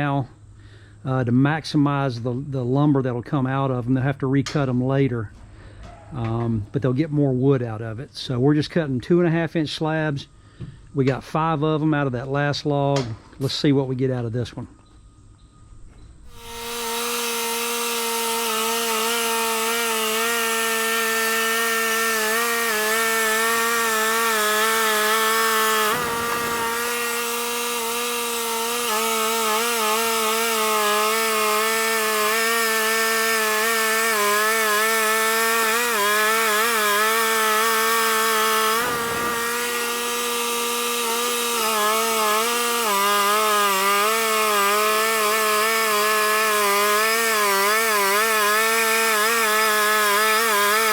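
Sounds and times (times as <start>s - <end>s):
band blade cutting log: 16.2s - 50.9s
band sawmill engine running: 16.3s - 50.9s.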